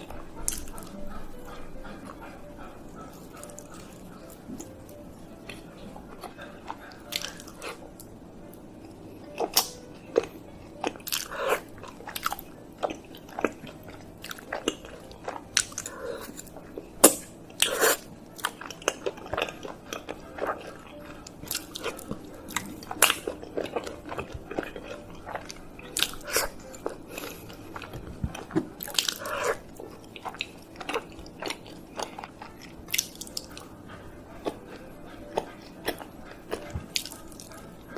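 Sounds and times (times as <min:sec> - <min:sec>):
chewing with crunchy clicks: 0:00.0 - 0:37.9.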